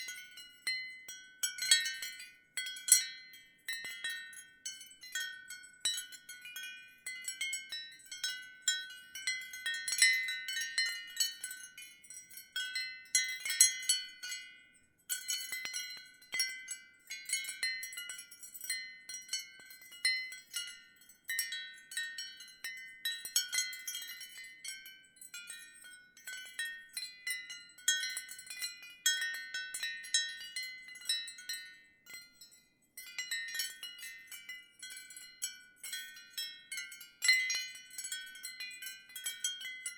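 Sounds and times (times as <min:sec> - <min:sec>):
ceramic wind chimes knocking: 0:15.2 - 0:20.6.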